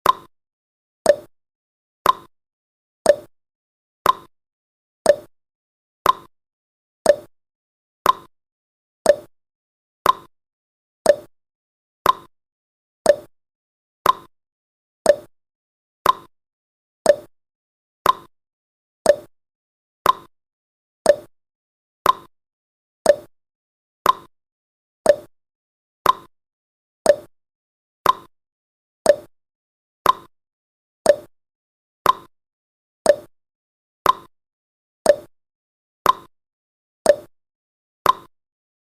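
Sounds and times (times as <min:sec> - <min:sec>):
clock ticking: 0:01.1 - 0:01.3, 0:03.1 - 0:03.3, 0:04.0 - 0:04.3, 0:05.1 - 0:05.3, 0:06.0 - 0:06.3, 0:07.1 - 0:07.3, 0:08.0 - 0:08.3, 0:09.1 - 0:09.3, 0:10.0 - 0:10.3, 0:11.1 - 0:11.3, 0:12.0 - 0:12.3, 0:13.1 - 0:13.3, 0:14.0 - 0:14.3, 0:15.1 - 0:15.3, 0:16.0 - 0:16.3, 0:17.1 - 0:17.3, 0:18.0 - 0:18.3, 0:19.1 - 0:19.3, 0:20.0 - 0:20.3, 0:21.1 - 0:21.3, 0:22.0 - 0:22.3, 0:23.1 - 0:23.3, 0:24.0 - 0:24.3, 0:25.1 - 0:25.3, 0:26.1 - 0:26.3, 0:27.1 - 0:27.3, 0:28.1 - 0:28.3, 0:29.1 - 0:29.3, 0:30.1 - 0:30.3, 0:31.1 - 0:31.3, 0:32.1 - 0:32.3, 0:33.1 - 0:33.3, 0:34.1 - 0:34.3, 0:35.1 - 0:35.3, 0:36.1 - 0:36.3, 0:37.1 - 0:37.3, 0:38.1 - 0:38.3.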